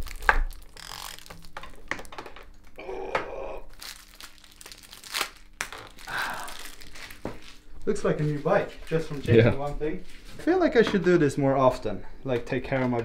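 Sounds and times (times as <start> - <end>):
rustling and crinkling of handled parts: 0.0 - 2.8, 3.7 - 9.3.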